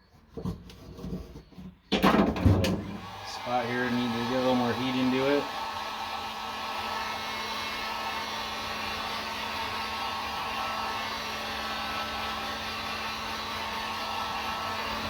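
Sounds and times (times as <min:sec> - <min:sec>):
heat gun blowing air: 0:02.7 - 0:15.0.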